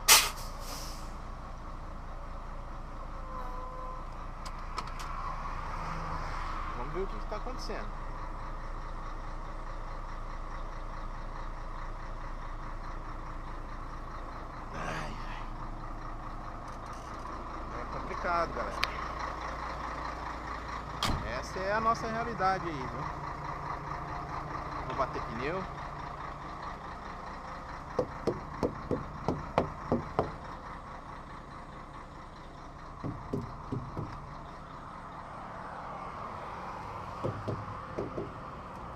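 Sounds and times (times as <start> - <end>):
diesel truck engine idling: 0.0 - 5.8, 6.7 - 38.9
mallet thudding on tyres: 33.0 - 34.2, 37.2 - 38.4.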